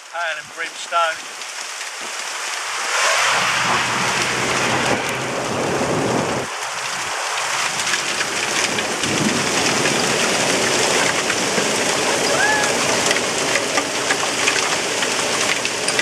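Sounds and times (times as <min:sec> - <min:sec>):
hail pelting down: 0:00.0 - 0:16.0
thunder rumbling: 0:02.5 - 0:14.8.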